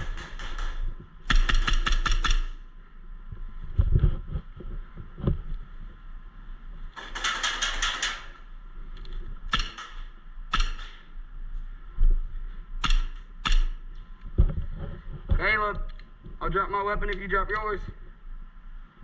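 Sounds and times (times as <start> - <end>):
airsoft gun shots: 0.0 - 2.6, 7.0 - 8.4, 9.5 - 11.1, 12.8 - 13.8.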